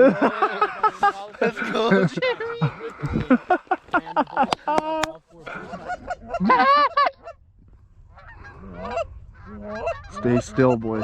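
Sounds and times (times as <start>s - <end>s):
geese honking: 5.5s - 7.4s, 8.1s - 11.0s.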